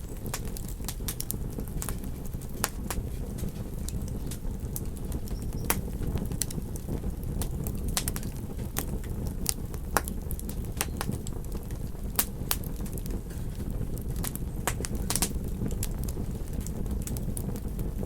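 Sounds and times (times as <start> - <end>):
campfire crackling: 0.0 - 18.0
steady low rumble: 0.0 - 18.0.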